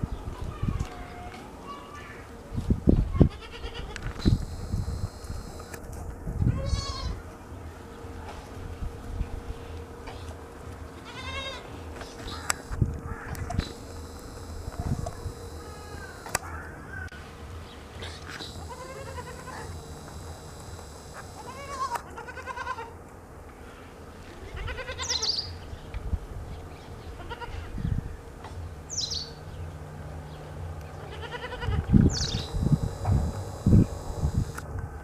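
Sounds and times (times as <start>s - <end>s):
goats bleating: 3.2s - 4.0s, 6.5s - 7.2s, 11.0s - 11.7s, 18.3s - 23.0s, 31.1s - 34.6s.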